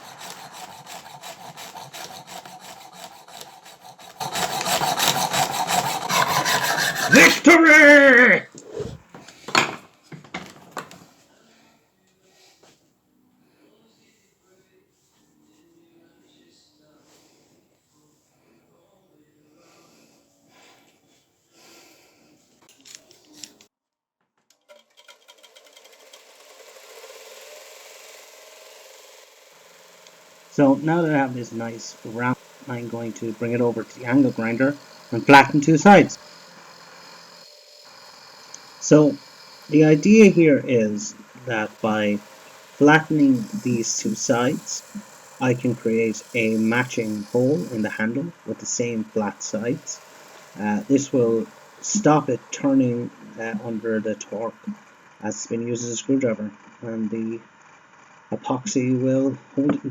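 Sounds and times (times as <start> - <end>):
hacksaw cutting metal: 0.0 - 8.7, 25.1 - 55.1
small electric power tool running: 0.0 - 8.7, 25.0 - 55.2.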